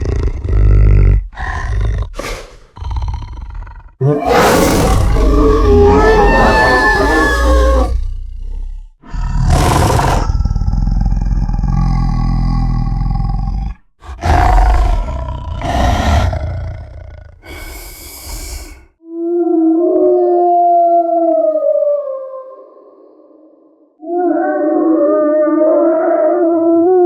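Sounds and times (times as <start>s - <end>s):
deep wolf-like creature roars: 0.0s - 2.2s, 2.8s - 18.9s
low creature growl: 0.0s - 18.9s.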